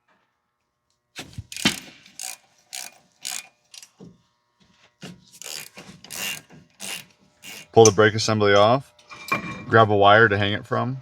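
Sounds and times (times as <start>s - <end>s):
ratchet wrench clicking: 1.3s - 3.9s, 5.4s - 7.8s.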